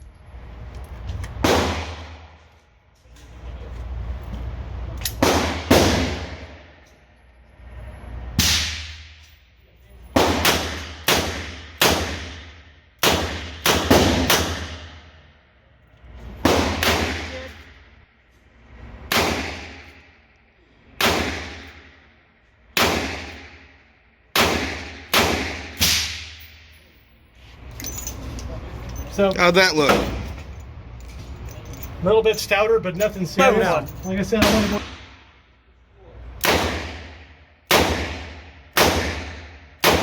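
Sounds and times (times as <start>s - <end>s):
handgun shots echoing indoors: 8.4s - 9.4s, 10.2s - 15.2s, 16.4s - 18.0s, 22.8s - 26.8s, 34.4s - 35.2s, 36.4s - 40.0s.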